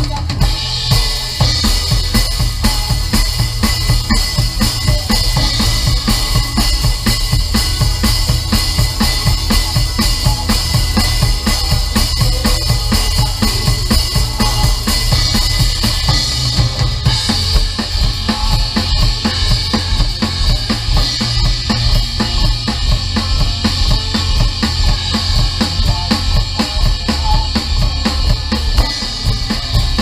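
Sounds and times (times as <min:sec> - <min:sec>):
drum kit beat: 0:00.0 - 0:30.0
live band music: 0:00.0 - 0:30.0.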